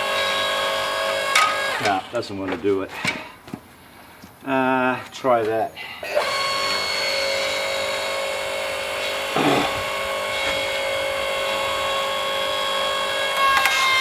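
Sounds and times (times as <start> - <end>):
log splitter running: 6.2 - 13.4.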